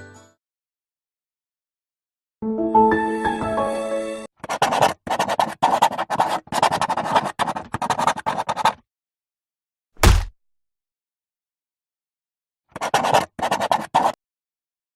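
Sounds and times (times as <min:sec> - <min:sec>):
low thump: 0:10.0 - 0:10.3.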